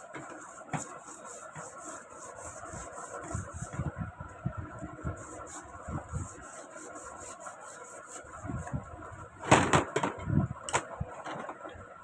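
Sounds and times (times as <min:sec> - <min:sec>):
sandpaper scrubbing metal: 0:00.0 - 0:03.8, 0:05.0 - 0:08.7.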